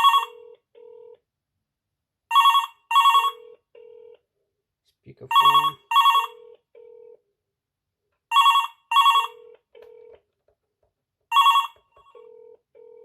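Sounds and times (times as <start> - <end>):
telephone ringing with warbling trill: 5.3 - 7.2, 8.3 - 9.5, 11.3 - 13.0.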